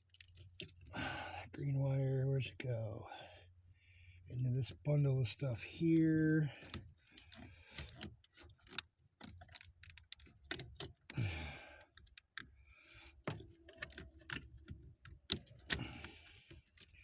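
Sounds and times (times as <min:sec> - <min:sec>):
plastic connectors clicking and rattling: 0:06.6 - 0:11.2, 0:11.8 - 0:17.0.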